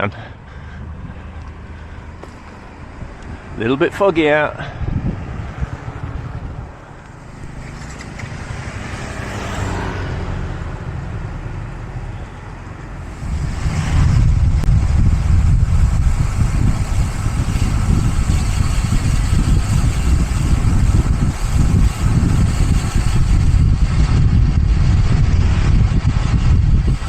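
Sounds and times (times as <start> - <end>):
vehicle engine rumbling: 0.0 - 27.0.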